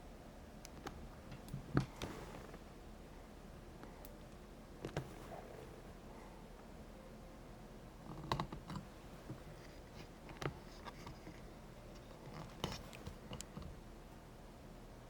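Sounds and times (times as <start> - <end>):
faint steady background noise: 0.0 - 15.0
light clicks and taps: 8.1 - 13.8.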